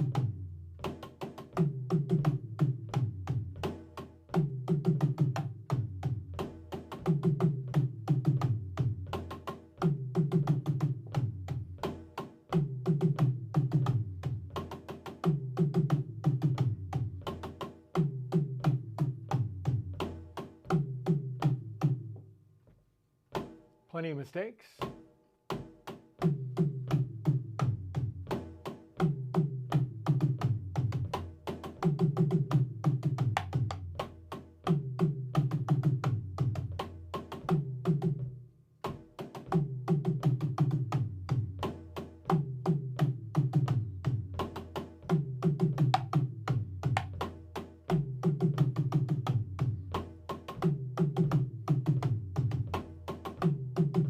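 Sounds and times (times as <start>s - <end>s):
drum kit playing: 23.3s - 38.2s, 38.9s - 54.0s.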